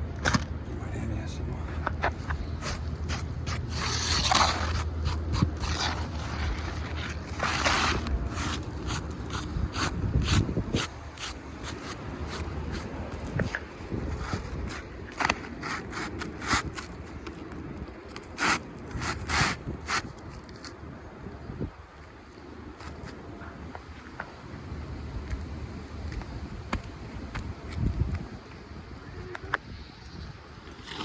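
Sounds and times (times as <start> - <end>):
hand tool scraping shingles: 2.5 - 17.0, 18.3 - 20.1.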